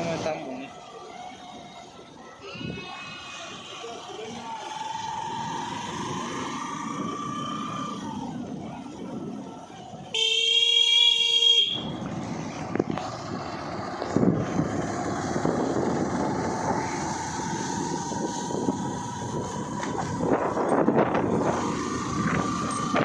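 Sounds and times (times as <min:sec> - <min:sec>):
road and wind noise: 0:00.0 - 0:23.0
vehicle horn blast: 0:10.2 - 0:11.9.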